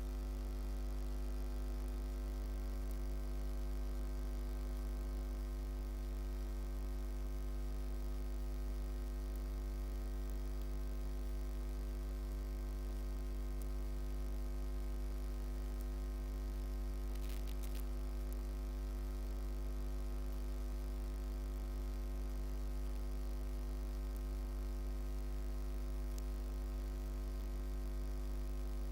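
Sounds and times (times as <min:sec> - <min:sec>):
electrical mains hum: 0:00.0 - 0:28.9
brief crackle: 0:17.0 - 0:18.6.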